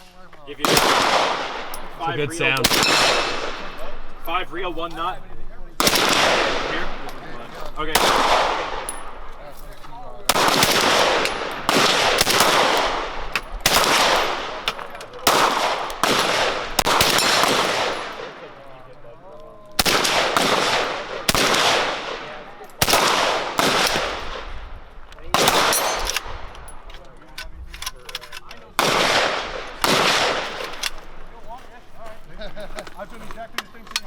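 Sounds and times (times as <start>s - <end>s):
gunshots with long echo: 0.6s - 4.6s, 5.8s - 9.5s, 10.2s - 18.8s, 19.8s - 26.9s, 28.8s - 31.4s.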